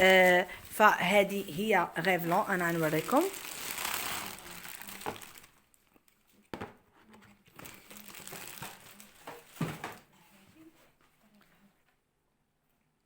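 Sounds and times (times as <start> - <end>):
plastic packaging crinkling: 0.0 - 6.2, 7.4 - 10.0.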